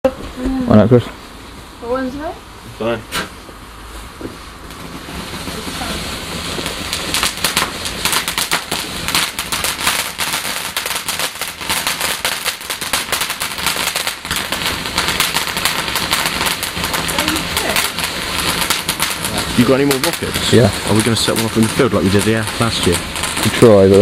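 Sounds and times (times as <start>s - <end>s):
firework fizzing: 0.1s - 24.0s
rapid crackle of small pops: 4.2s - 24.0s.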